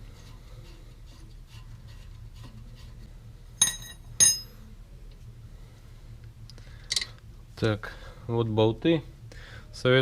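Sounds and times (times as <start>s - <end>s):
ringing metal clinks: 3.6s - 4.6s.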